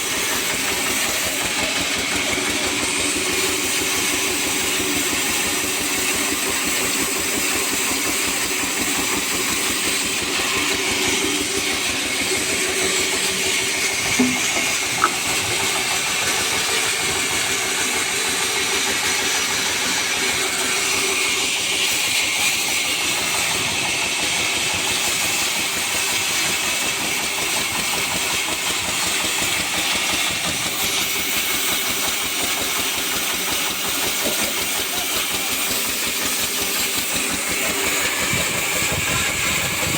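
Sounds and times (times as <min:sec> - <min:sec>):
sawmill machinery running: 0:00.0 - 0:39.9
short knocks: 0:14.1 - 0:15.4.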